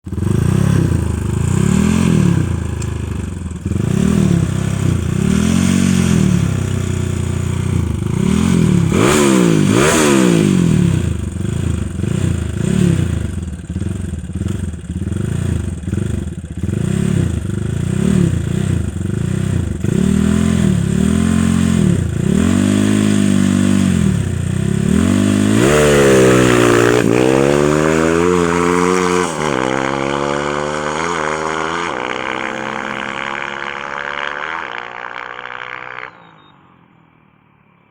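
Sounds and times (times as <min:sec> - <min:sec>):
motorcycle engine revving: 0:00.0 - 0:36.5.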